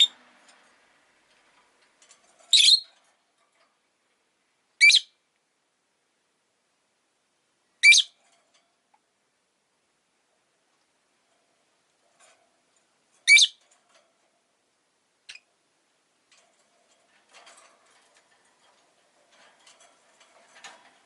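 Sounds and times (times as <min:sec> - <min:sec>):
bird chirping shrilly: 0:02.5 - 0:02.9, 0:04.8 - 0:05.1, 0:07.8 - 0:08.2, 0:13.3 - 0:13.6.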